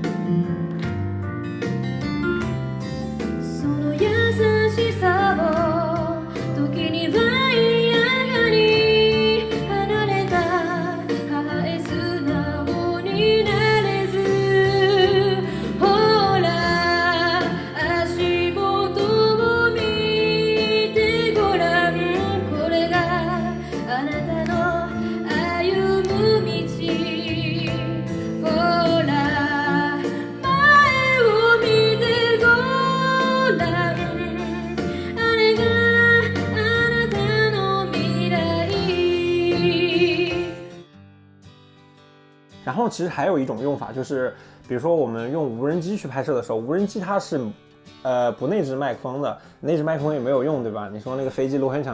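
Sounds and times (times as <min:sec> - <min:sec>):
instrumental accompaniment: 0:00.0 - 0:51.9
person singing with vibrato: 0:03.6 - 0:40.7.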